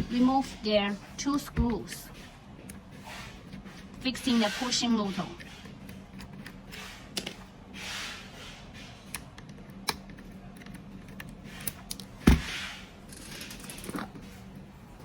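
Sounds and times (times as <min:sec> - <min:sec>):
screwdriver clicking and scraping: 0:03.5 - 0:07.5.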